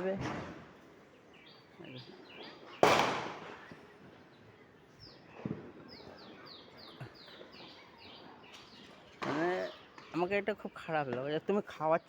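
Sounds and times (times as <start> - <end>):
bird chirping: 1.1 - 3.0
firecracker bang with echo: 2.8 - 3.6.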